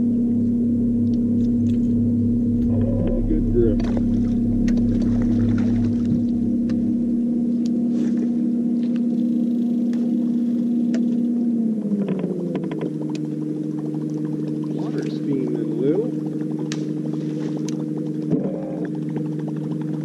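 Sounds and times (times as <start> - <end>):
boat motor humming: 0.0 - 20.0
faint ticks: 17.6 - 20.0.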